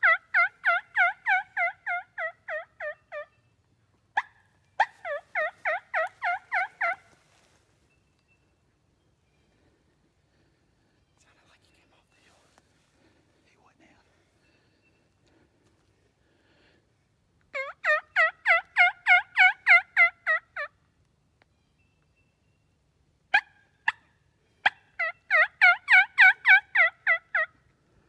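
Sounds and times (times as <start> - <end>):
turkey clucks: 0.0 - 3.4, 4.0 - 7.6, 17.5 - 20.8, 23.3 - 27.6
turkey yelps: 0.0 - 3.4, 4.2 - 7.2, 17.5 - 20.7, 23.3 - 27.6.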